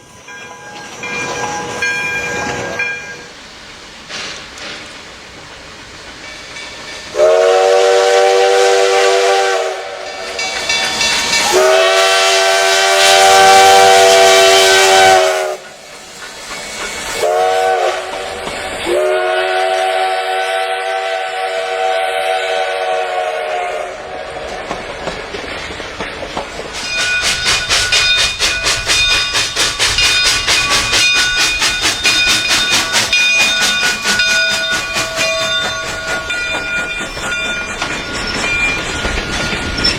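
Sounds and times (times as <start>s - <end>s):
train clattering past: 0.0s - 39.9s
train horn blasts: 7.1s - 10.3s, 11.4s - 15.7s, 17.2s - 18.2s, 18.8s - 24.2s.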